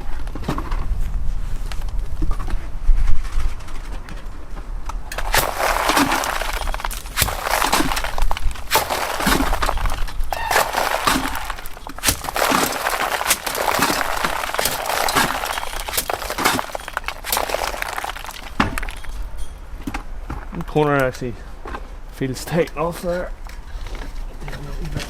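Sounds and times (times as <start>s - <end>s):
trowel scraping gritty render: 5.2s - 19.2s.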